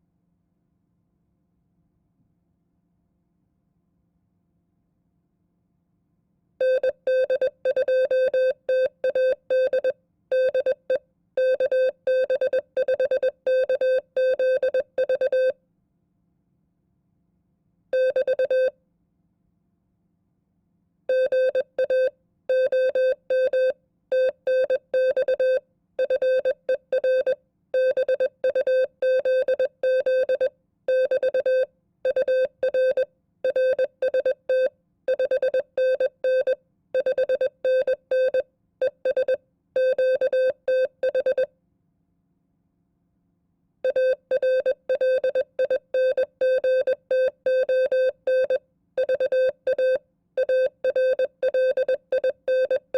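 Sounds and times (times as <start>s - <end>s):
morse code tone: 6.6s - 15.5s, 18.0s - 18.7s, 21.1s - 41.5s, 43.9s - 52.9s.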